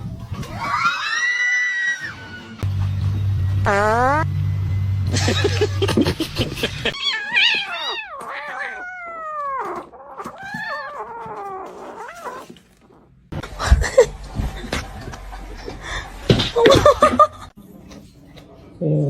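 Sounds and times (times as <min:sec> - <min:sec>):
cat meowing: 0:07.0 - 0:13.0.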